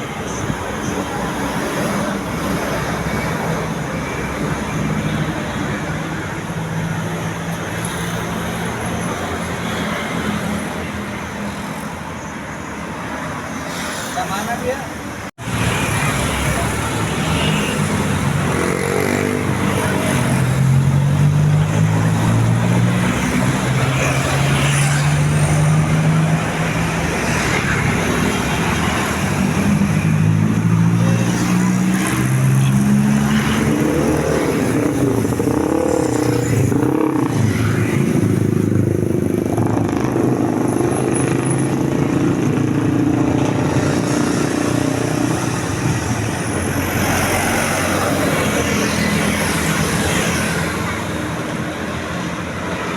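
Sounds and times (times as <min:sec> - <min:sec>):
passing vehicle engines: 0:00.0 - 0:52.9.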